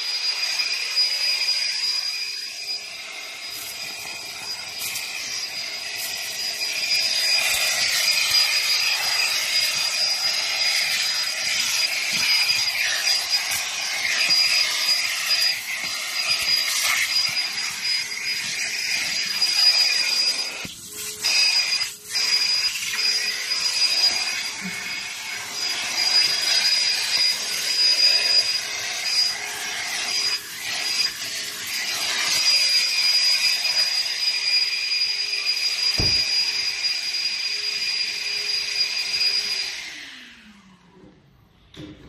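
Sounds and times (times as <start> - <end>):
car wash machine hiss and whine: 2.1 - 23.9, 35.9 - 36.9.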